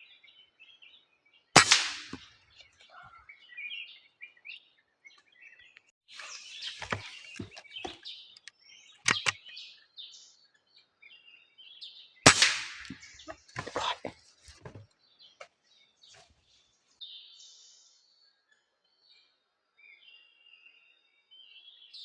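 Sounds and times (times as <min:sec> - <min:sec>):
air rifle shot: 0:01.6 - 0:02.2, 0:12.3 - 0:13.8
birds chirping: 0:01.6 - 0:10.1, 0:12.3 - 0:16.3
sharp clicks: 0:09.1 - 0:09.4
rustling: 0:12.6 - 0:14.8.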